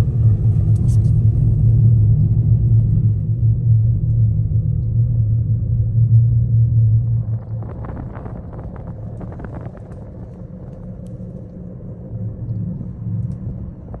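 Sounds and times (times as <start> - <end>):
gondola cabin rumbling: 0.0 - 14.0.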